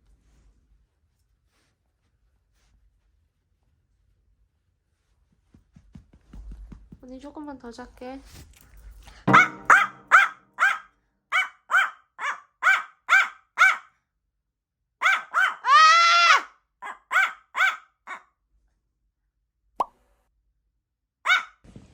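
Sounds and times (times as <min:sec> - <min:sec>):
small dog yapping: 0:09.4 - 0:13.9, 0:15.0 - 0:18.2, 0:21.3 - 0:21.6.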